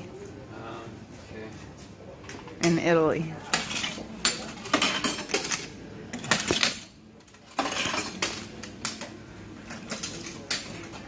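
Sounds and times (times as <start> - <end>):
crockery and cutlery clinking: 3.4 - 11.0.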